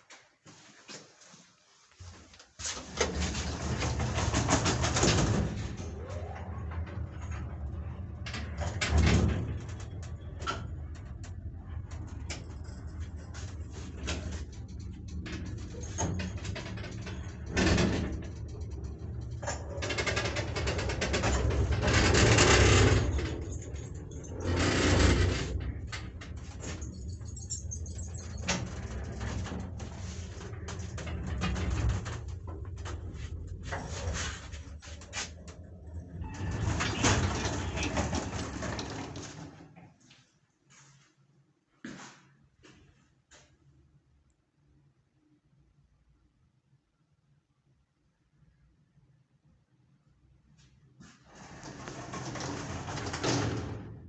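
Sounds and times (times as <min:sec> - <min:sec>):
elevator scraping and squeaking: 0:02.8 - 0:39.6, 0:51.2 - 0:54.0
low elevator rumble: 0:02.8 - 0:40.0, 0:51.3 - 0:54.0
low motor hum: 0:05.5 - 0:39.0.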